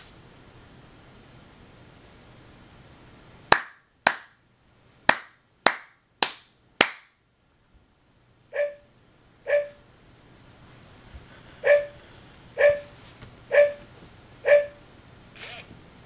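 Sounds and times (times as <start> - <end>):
hand claps: 3.5 - 4.4, 5.1 - 7.2
robot dog electronic bark: 8.5 - 9.8, 11.6 - 12.0, 12.6 - 12.9, 13.5 - 13.8, 14.4 - 14.8.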